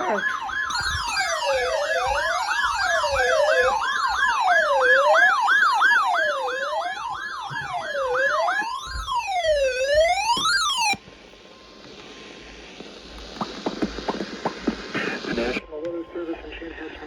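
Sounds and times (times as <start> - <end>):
electronic siren yelp: 0.0 - 12.6
electronic siren wail: 0.0 - 14.3
steady high tone: 0.0 - 17.0.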